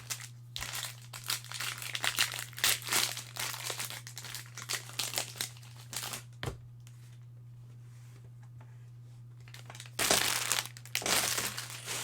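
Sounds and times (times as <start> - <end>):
plastic wrapping crinkling and tearing: 0.0 - 6.4, 9.5 - 12.0
low electrical hum: 0.0 - 12.0.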